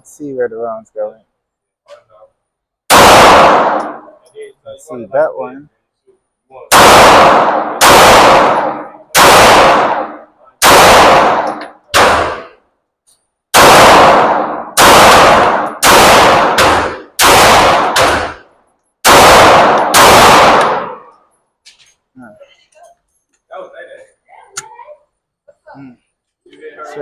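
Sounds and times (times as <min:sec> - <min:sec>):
pistol shots ringing indoors: 0:02.9 - 0:04.2, 0:06.7 - 0:12.6, 0:13.5 - 0:21.3.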